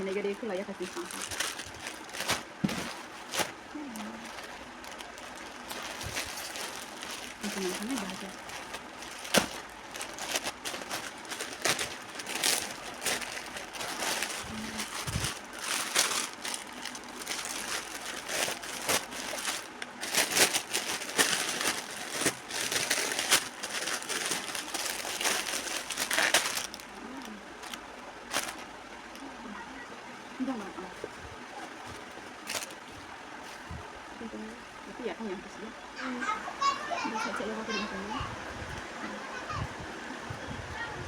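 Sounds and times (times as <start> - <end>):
plastic packaging crinkling: 0.0 - 29.4, 31.5 - 33.0.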